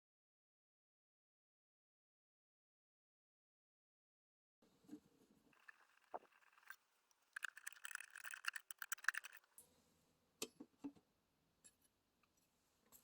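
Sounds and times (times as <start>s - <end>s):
small parts rattling: 5.6s - 9.4s
sharp clicks: 7.4s - 9.4s.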